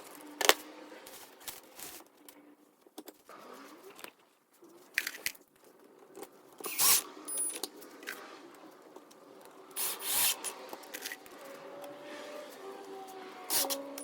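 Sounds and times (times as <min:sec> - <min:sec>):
loud scraping bursts: 0:09.8 - 0:12.7.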